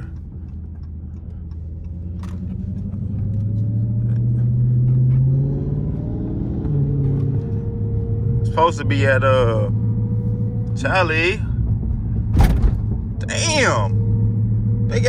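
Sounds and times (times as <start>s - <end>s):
car engine at low speed: 0.0s - 15.0s.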